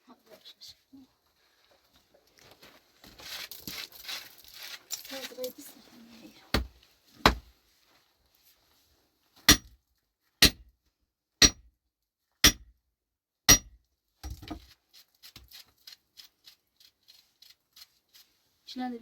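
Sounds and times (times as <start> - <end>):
light clicks and scrapes: 1.3 - 6.9
pickaxe striking rock: 6.6 - 7.4, 9.5 - 9.7, 10.4 - 10.6, 11.4 - 11.7, 12.4 - 12.7, 13.5 - 14.6.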